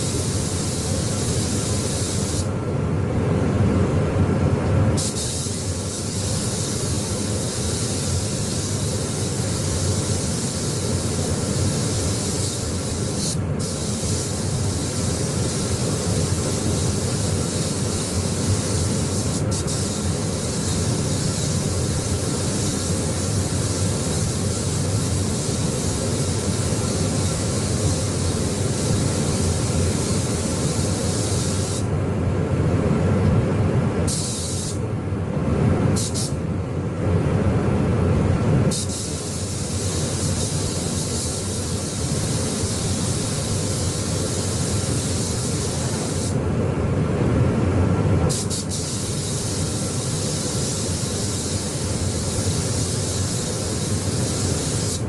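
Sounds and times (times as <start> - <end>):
paint spray gun hissing: 0.0 - 2.5, 5.0 - 31.9, 34.1 - 34.8, 36.0 - 36.4, 38.7 - 46.4, 48.3 - 55.0.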